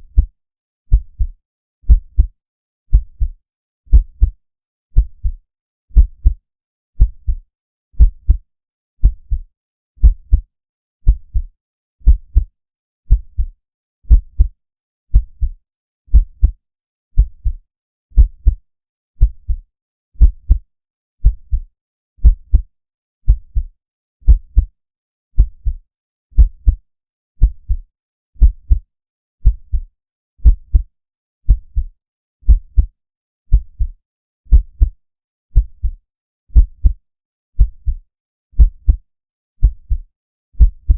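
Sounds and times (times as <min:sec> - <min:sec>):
heartbeat thumps: 0:00.1 - 0:00.3, 0:01.9 - 0:02.3, 0:03.9 - 0:04.4, 0:06.0 - 0:06.4, 0:08.0 - 0:08.4, 0:09.0 - 0:09.4, 0:10.0 - 0:10.5, 0:11.1 - 0:11.5, 0:12.1 - 0:12.5, 0:13.1 - 0:13.5, 0:14.1 - 0:14.5, 0:16.1 - 0:16.6, 0:18.2 - 0:18.6, 0:19.2 - 0:19.6, 0:20.2 - 0:20.6, 0:22.2 - 0:22.7, 0:24.3 - 0:24.7, 0:26.4 - 0:26.8, 0:28.4 - 0:28.8, 0:30.4 - 0:30.9, 0:32.5 - 0:32.9, 0:34.5 - 0:34.9, 0:36.6 - 0:37.0, 0:37.6 - 0:38.0, 0:38.6 - 0:39.0, 0:39.6 - 0:40.0, 0:40.6 - 0:40.9.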